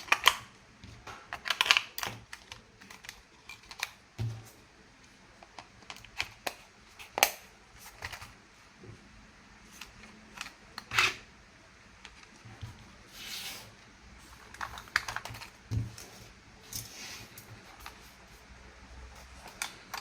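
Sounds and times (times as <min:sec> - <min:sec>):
plastic toy parts clicking: 0:00.0 - 0:00.5, 0:01.3 - 0:04.0, 0:14.5 - 0:15.6.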